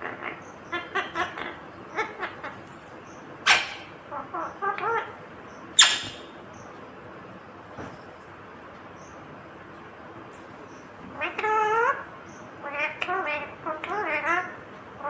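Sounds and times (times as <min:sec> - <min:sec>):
parakeet squawks: 0:00.0 - 0:02.7, 0:03.4 - 0:05.2, 0:05.8 - 0:06.4, 0:11.2 - 0:14.6
parakeet chattering: 0:00.0 - 0:05.2, 0:05.8 - 0:06.4, 0:11.2 - 0:14.6.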